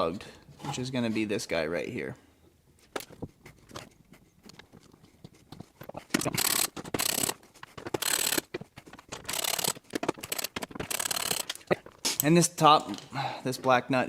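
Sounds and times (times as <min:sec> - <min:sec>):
ratchet wrench clicking: 0:06.2 - 0:08.5, 0:09.2 - 0:11.6.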